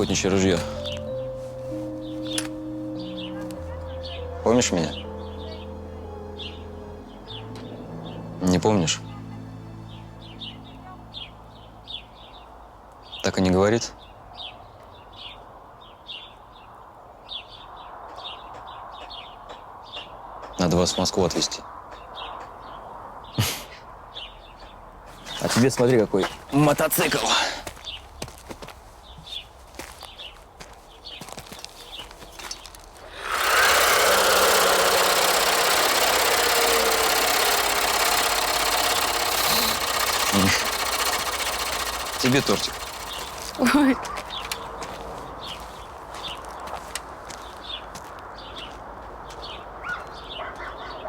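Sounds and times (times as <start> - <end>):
toy motorcycle engine noise: 0.0 - 1.1, 33.0 - 44.6
small birds chirping: 0.0 - 51.0.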